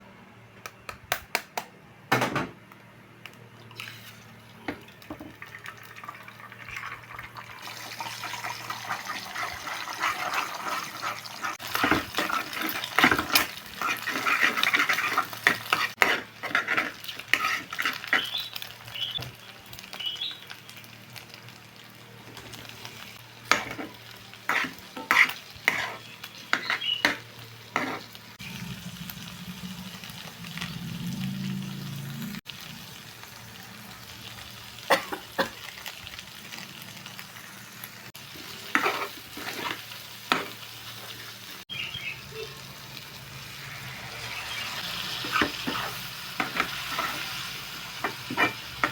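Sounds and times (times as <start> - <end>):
food sizzling: 3.4 - 48.9
spatula scraping a pan: 8.6 - 18.5, 23.5 - 28.2, 38.3 - 41.2, 44.2 - 48.9.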